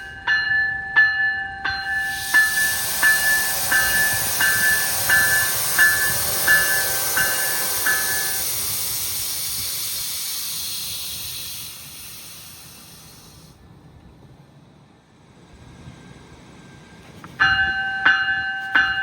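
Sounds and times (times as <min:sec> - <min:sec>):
bell ringing: 0:00.0 - 0:08.5
train wheel and rail noise: 0:00.0 - 0:19.0.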